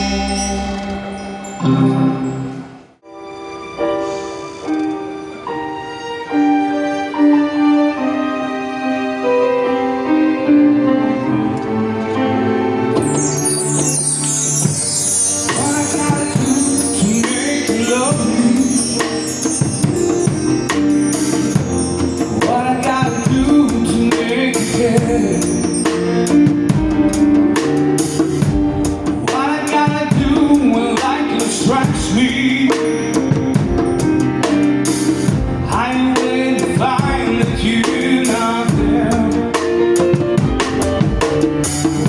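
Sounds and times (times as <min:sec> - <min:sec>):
band playing music: 0:00.0 - 0:02.9, 0:06.4 - 0:42.0
drum kit beat: 0:13.6 - 0:42.0
person singing: 0:15.4 - 0:35.0, 0:35.6 - 0:42.0.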